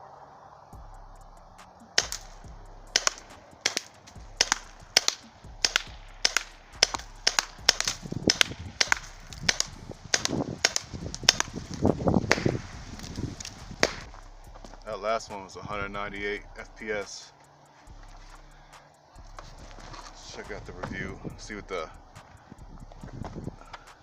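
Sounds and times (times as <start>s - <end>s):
airgun shots: 1.6s - 15.4s.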